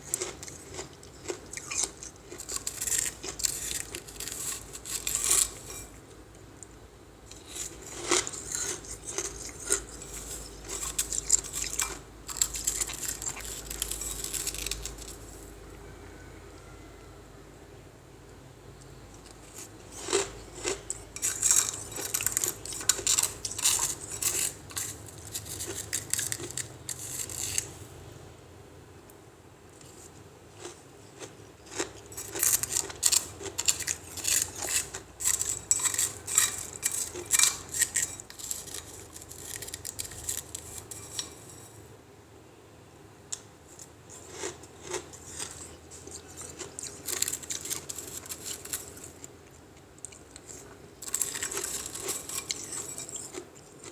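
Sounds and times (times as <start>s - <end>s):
ice crunching between teeth: 0.0s - 5.9s, 7.3s - 15.2s, 19.5s - 27.7s, 30.6s - 41.6s, 44.2s - 49.3s, 50.0s - 53.9s.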